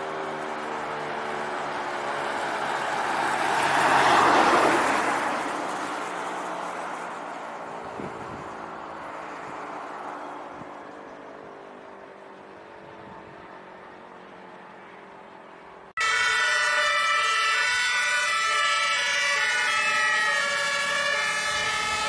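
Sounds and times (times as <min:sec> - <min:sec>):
car passing: 0:00.0 - 0:17.2
motor siren tone: 0:16.0 - 0:22.0.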